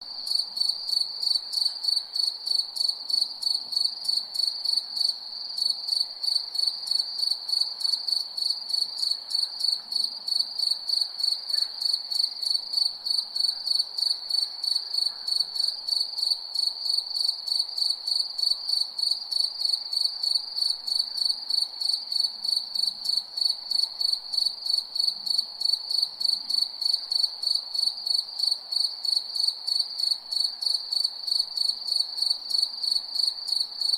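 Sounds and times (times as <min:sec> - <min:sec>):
cricket chirping: 0:00.1 - 0:33.9.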